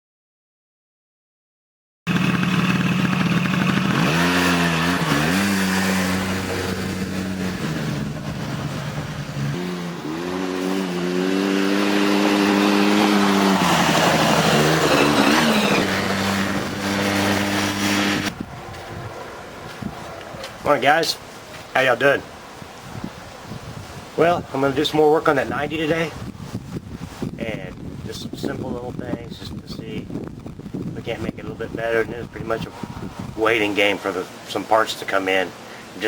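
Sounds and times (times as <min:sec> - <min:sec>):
atv engine revving: 0:02.1 - 0:20.9.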